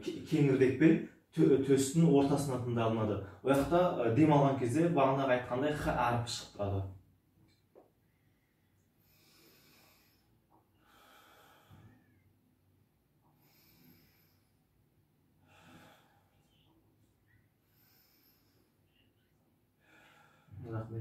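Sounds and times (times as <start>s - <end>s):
slow deep breathing: 8.1s - 12.4s, 13.2s - 20.8s.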